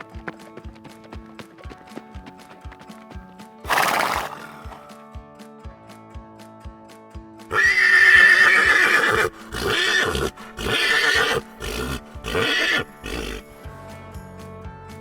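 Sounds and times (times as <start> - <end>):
background music: 0.0 - 15.0
horse whinnying: 3.7 - 4.9, 7.5 - 13.7.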